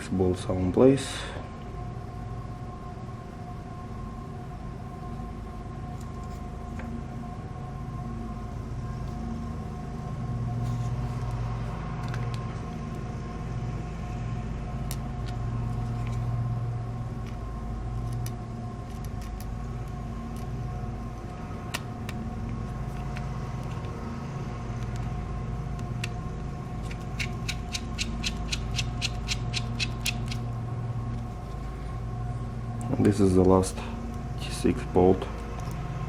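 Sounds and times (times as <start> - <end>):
steady machine-like hum: 0.0 - 36.0
screwdriver clicking on small screws: 26.8 - 30.4.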